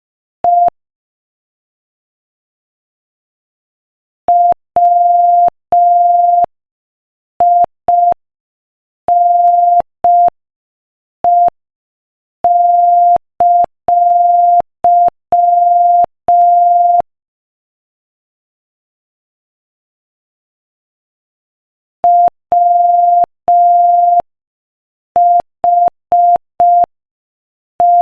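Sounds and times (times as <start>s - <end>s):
morse code beeps: 4.3s - 6.5s, 9.1s - 10.3s, 12.5s - 17.0s, 22.0s - 24.2s, 25.2s - 26.9s, 27.8s - 28.0s.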